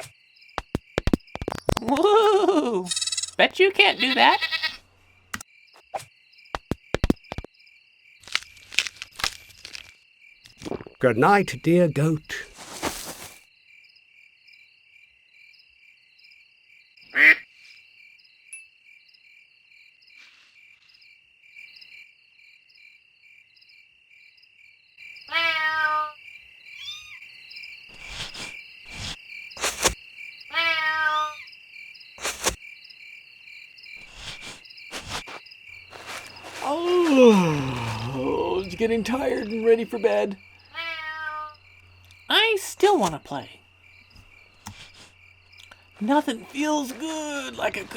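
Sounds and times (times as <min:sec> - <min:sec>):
crickets chirping: 0:00.0 - 0:47.9
short animal calls: 0:02.9 - 0:03.4.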